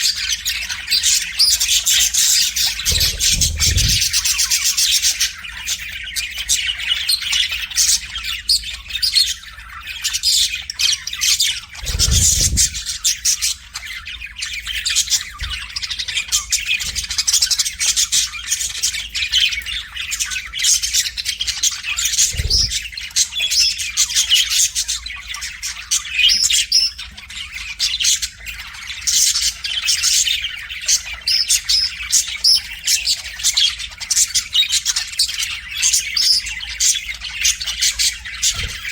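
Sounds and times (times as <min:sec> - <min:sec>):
budgerigar warbling: 0:02.6 - 0:04.6
dull low thumps: 0:02.9 - 0:04.4.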